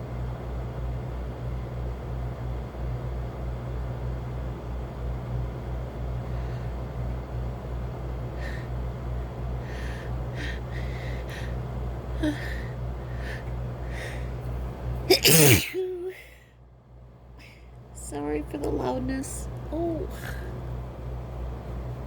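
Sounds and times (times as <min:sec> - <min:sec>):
short breathy in-breaths: 0:09.6 - 0:11.6, 0:12.2 - 0:14.4
person sneezing: 0:15.1 - 0:16.3.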